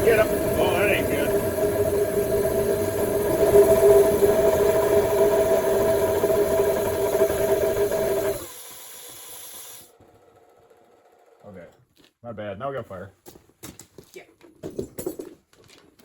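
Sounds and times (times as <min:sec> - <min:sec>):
steady whistling tone: 0:00.0 - 0:08.4
compressed air rushing through burner: 0:00.0 - 0:09.9.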